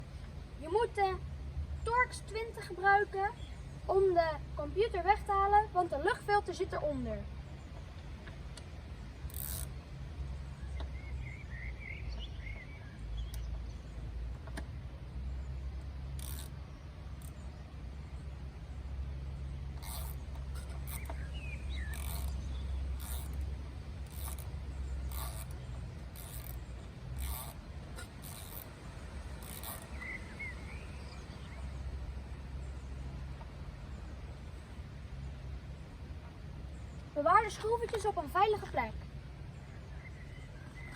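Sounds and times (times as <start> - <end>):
steady low rumble: 0.0 - 40.9
bird chirping: 10.2 - 33.3, 36.6 - 40.9
light clicks: 13.2 - 13.7.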